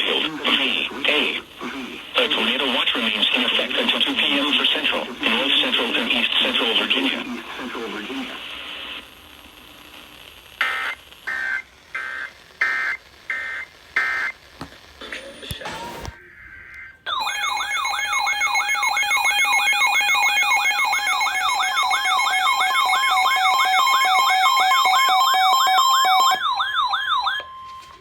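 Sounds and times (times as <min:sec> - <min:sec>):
electronic alert siren tone: 0:17.1 - 0:27.8.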